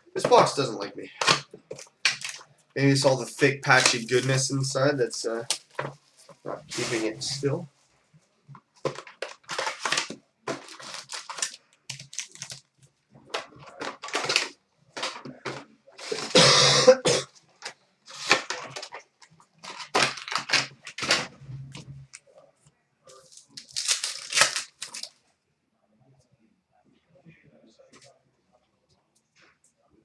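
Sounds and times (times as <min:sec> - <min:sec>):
cardboard and wrapper rustling: 0:01.2 - 0:02.5, 0:08.8 - 0:12.7, 0:13.3 - 0:16.4, 0:17.6 - 0:21.4, 0:23.2 - 0:25.1
wrapper ripping: 0:01.8 - 0:02.5, 0:08.9 - 0:12.7, 0:18.1 - 0:19.0, 0:19.6 - 0:21.3, 0:23.2 - 0:25.1.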